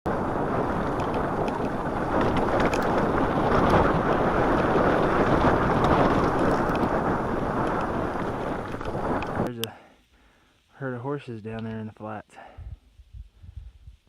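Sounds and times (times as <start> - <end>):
wind buffeting microphone: 0.1 - 9.5, 12.6 - 14.0.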